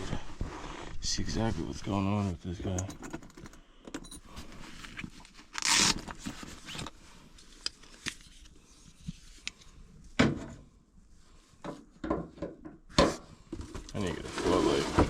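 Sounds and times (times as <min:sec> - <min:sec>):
thump: 0:10.2 - 0:10.6.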